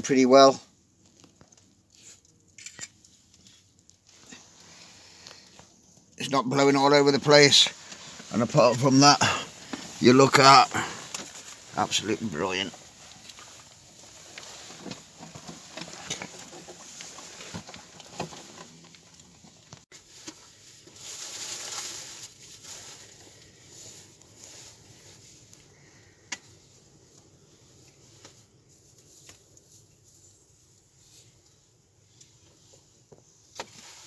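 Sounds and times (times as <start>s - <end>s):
wood fire crackling: 6.2s - 14.8s.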